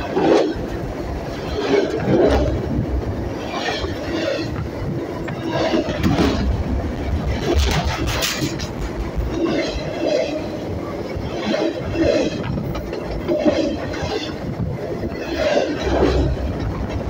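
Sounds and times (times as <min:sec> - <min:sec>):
train wheels clattering: 0:00.0 - 0:17.0
train wheels rumbling on rail: 0:00.0 - 0:17.0.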